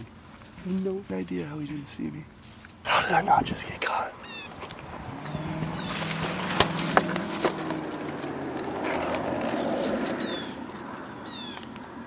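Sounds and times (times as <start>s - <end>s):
rustle of leaves and branches: 0.0s - 11.8s
twigs snapping: 5.8s - 11.9s.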